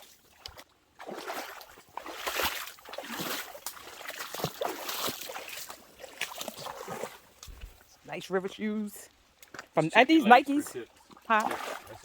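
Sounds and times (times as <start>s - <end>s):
footsteps wading through water: 0.0s - 8.0s, 10.7s - 12.0s.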